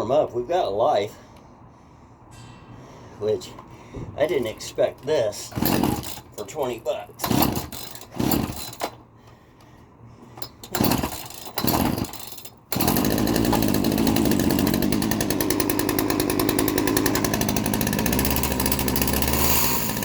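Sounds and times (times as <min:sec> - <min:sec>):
chainsaw short bursts: 0:05.4 - 0:08.9, 0:10.4 - 0:20.0
chainsaw running: 0:05.4 - 0:09.0, 0:10.4 - 0:20.0.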